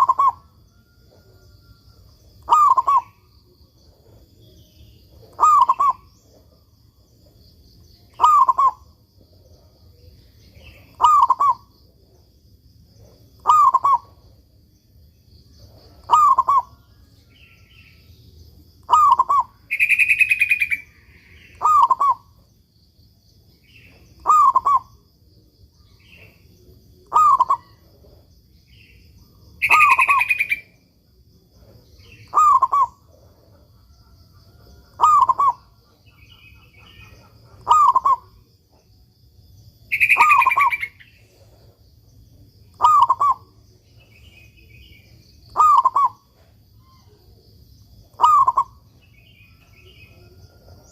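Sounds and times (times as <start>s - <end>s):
dove cooing: 0.0s - 1.7s, 2.4s - 4.4s, 5.0s - 6.6s, 8.1s - 10.0s, 10.6s - 12.2s, 13.4s - 14.3s, 15.6s - 16.8s, 18.9s - 22.4s, 23.8s - 25.0s, 27.0s - 28.2s, 29.6s - 30.7s, 31.6s - 38.5s, 39.9s - 41.8s, 42.7s - 43.5s, 45.6s - 46.5s, 48.1s - 48.8s.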